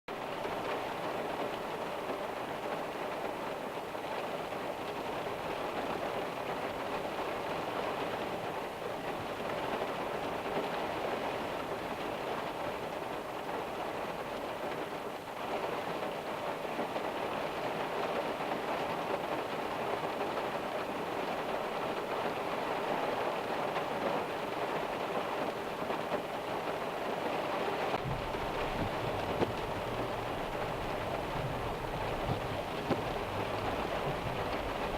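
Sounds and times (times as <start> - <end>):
steady rain falling: 0.1 - 34.9
low rumble: 28.0 - 34.9.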